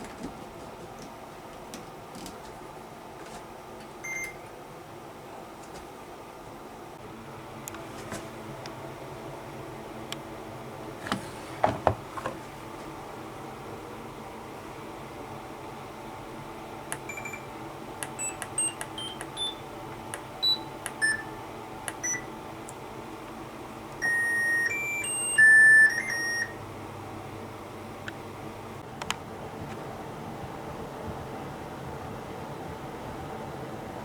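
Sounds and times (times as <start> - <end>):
control panel beeps: 4.0 - 4.4, 17.0 - 22.3, 24.0 - 26.6.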